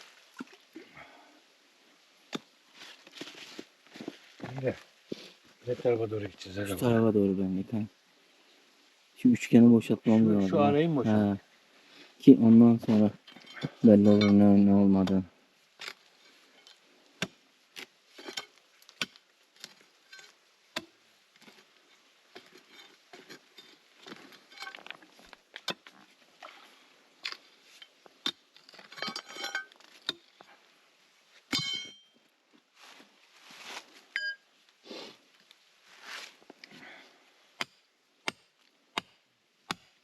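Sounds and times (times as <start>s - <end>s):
loose stones clinking: 12.9s - 15.2s, 15.8s - 26.1s, 27.2s - 30.5s, 34.1s - 34.5s
hand tools scraping rock: 15.8s - 30.6s, 37.6s - 40.0s.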